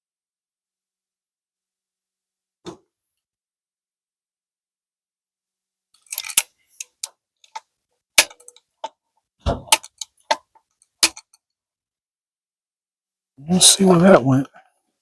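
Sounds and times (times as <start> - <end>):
rifle metallic clicks and knocks: 6.0 - 9.0, 9.6 - 11.4.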